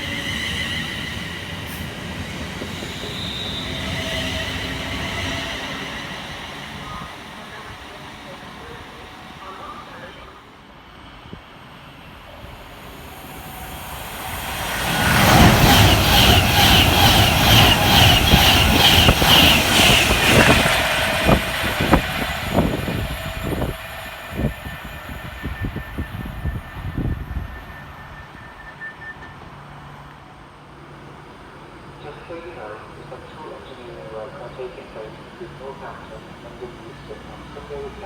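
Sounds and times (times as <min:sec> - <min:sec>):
train rushing past: 0:00.0 - 0:38.0
train wheel clacks: 0:14.4 - 0:24.6.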